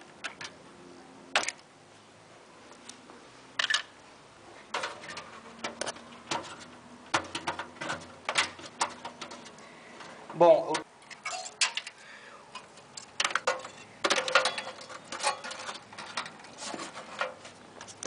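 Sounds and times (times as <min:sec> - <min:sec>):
computer hardware clicks and knocks: 0:04.7 - 0:09.6, 0:12.6 - 0:16.4.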